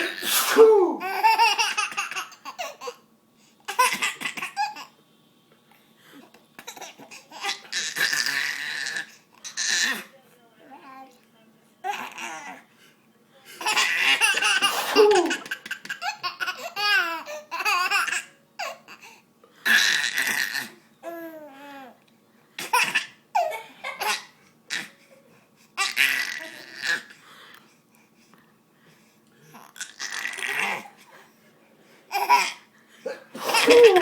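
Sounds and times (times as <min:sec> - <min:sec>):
baby laughing: 0:00.9 - 0:03.0, 0:13.6 - 0:18.9, 0:32.1 - 0:32.6, 0:33.4 - 0:34.0.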